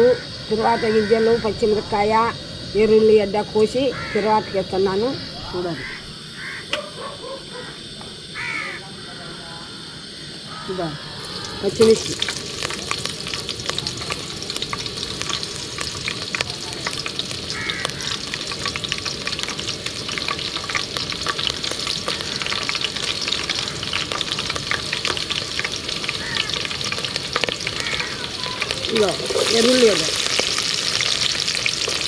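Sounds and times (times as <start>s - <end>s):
chillies sizzling in hot oil: 10.8s - 32.0s.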